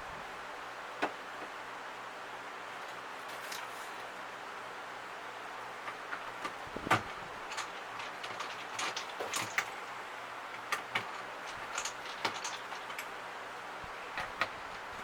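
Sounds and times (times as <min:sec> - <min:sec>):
light clicks and knocks of parts: 0:02.7 - 0:04.2, 0:05.7 - 0:15.0.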